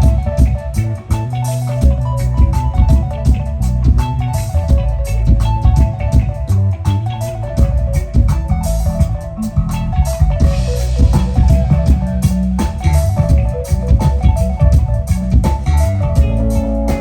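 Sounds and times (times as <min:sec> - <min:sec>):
bass guitar line: 0:00.0 - 0:17.0
drum kit beat: 0:00.0 - 0:17.0.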